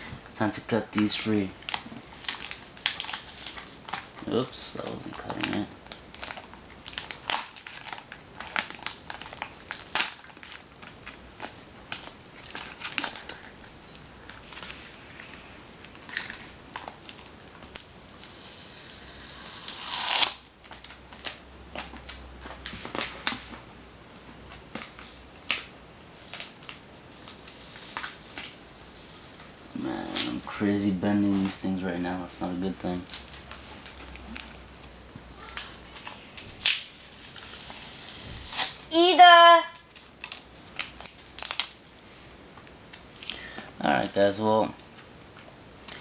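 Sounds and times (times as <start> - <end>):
packaging crackling and crinkling: 0.2 - 38.9, 39.8 - 46.0
tape tearing: 1.0 - 13.5, 16.0 - 23.5, 24.5 - 30.6, 35.4 - 41.9.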